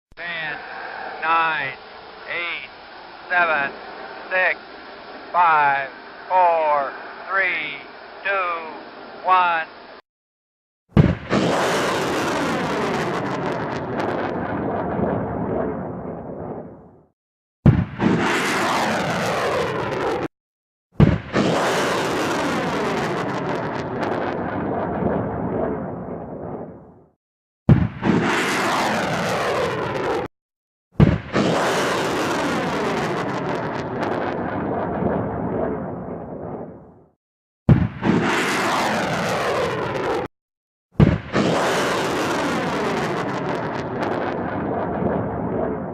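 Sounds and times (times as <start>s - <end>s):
rocket engine blast: 0.2s - 8.6s, 11.0s - 15.6s, 17.7s - 20.3s, 21.0s - 25.2s, 27.7s - 30.3s, 31.0s - 36.8s, 37.7s - 40.3s, 41.0s - 45.2s
sharp blast: 0.2s - 8.7s, 11.0s - 14.2s, 41.0s - 44.4s.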